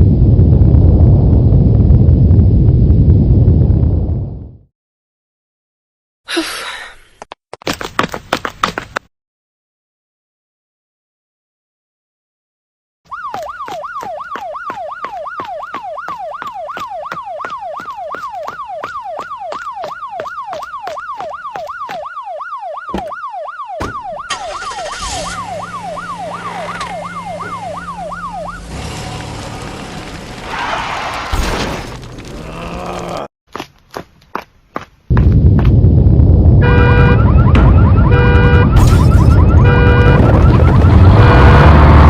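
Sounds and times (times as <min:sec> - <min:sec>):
emergency siren yelping: 0:13.1 - 0:28.8, 0:36.6 - 0:42.0.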